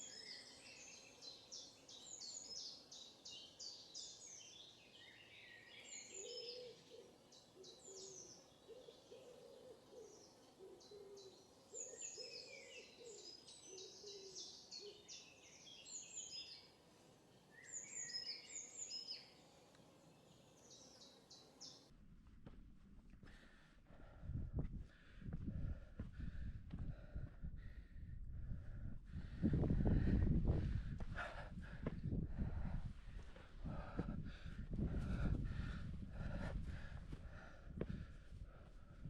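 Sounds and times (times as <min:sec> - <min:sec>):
small birds chirping and trilling: 0:00.0 - 0:21.9.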